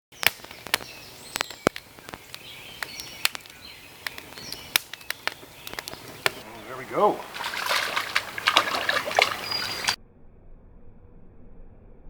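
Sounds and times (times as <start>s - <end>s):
birds chirping: 0.1s - 10.0s
sharp clicks or snaps: 0.2s - 6.4s.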